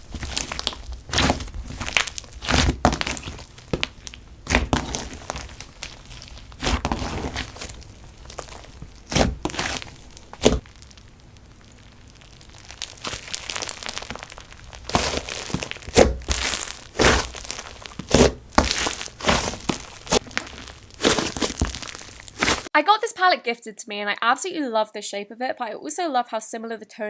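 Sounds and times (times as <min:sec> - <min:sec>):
slime popping and crackling: 0:00.0 - 0:22.7.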